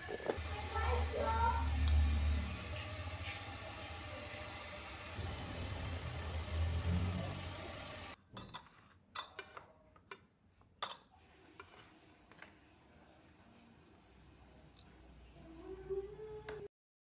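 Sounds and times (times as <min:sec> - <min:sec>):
dishes and cutlery clinking: 0:08.3 - 0:10.2, 0:10.8 - 0:11.8.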